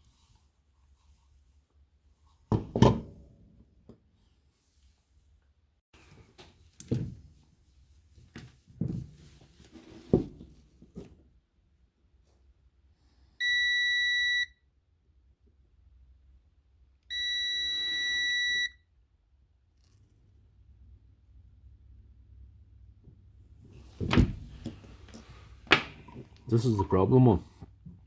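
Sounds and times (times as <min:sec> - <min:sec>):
multimeter continuity beep: 0:13.4 - 0:14.6, 0:17.1 - 0:18.8.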